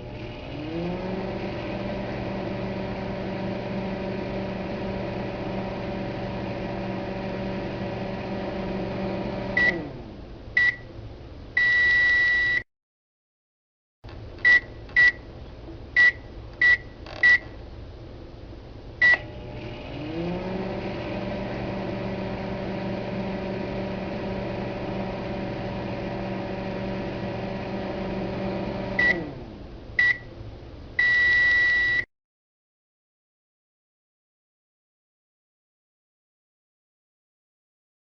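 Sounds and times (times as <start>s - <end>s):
microwave running hum: 0.0s - 12.4s, 14.1s - 32.0s
long end-of-cycle beep: 9.6s - 9.8s, 10.6s - 10.9s, 11.6s - 12.6s, 29.0s - 29.3s, 30.0s - 30.3s, 31.0s - 32.1s
microwave keypad beeps: 11.6s - 12.6s, 14.4s - 15.2s, 16.0s - 17.5s, 30.0s - 30.3s, 31.0s - 32.1s.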